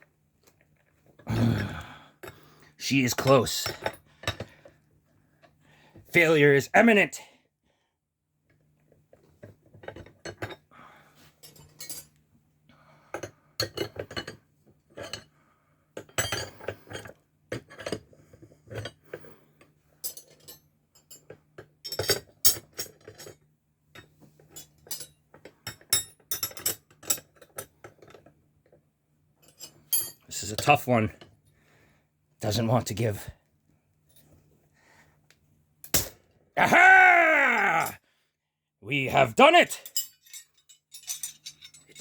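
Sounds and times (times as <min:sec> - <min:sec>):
wrenches clanking against padlock: 0:39.5 - 0:42.0.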